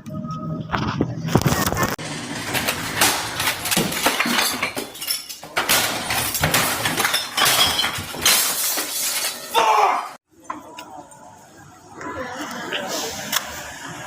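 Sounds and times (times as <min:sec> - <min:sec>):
hard objects clinking and rattling: 0:02.3 - 0:09.6.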